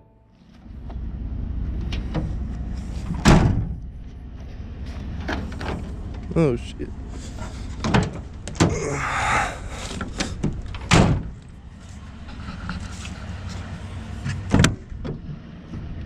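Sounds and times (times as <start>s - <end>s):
car engine running: 0.4s - 16.0s
car doors shutting: 3.0s - 3.8s, 7.2s - 11.6s, 13.8s - 16.0s.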